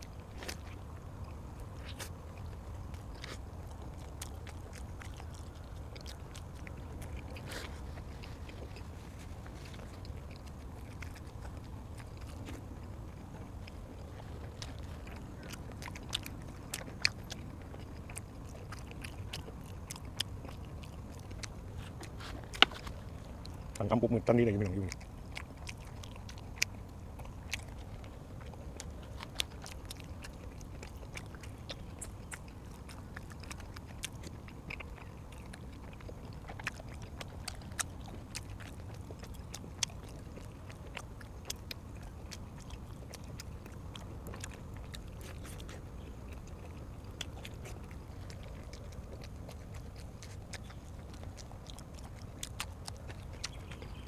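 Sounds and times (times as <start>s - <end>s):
person chewing food: 0.0s - 54.0s
steady low hum: 0.0s - 54.0s.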